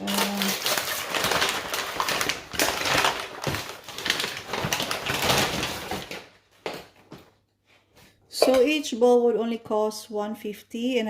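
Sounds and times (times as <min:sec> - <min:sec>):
crinkly wrapping crackling: 0:00.0 - 0:07.1.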